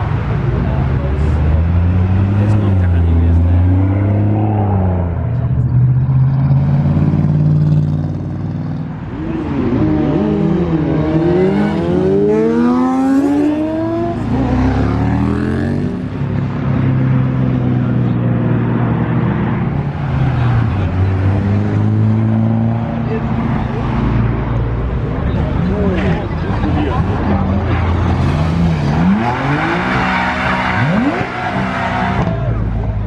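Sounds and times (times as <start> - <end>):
sports car engine accelerating: 25.3 - 32.8.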